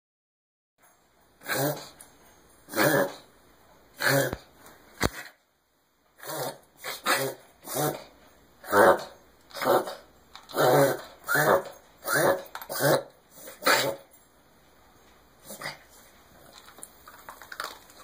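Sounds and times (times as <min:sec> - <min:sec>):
dog reverse sneezing: 0:06.2 - 0:10.0, 0:10.6 - 0:14.0.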